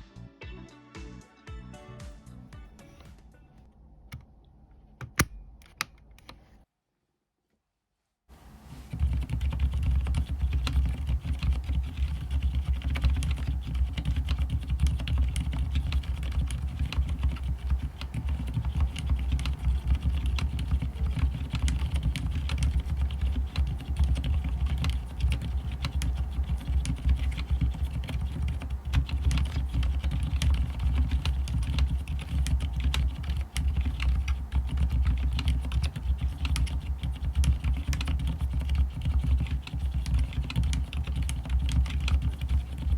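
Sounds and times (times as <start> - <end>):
typing on mechanical keyboard: 8.9 - 42.9.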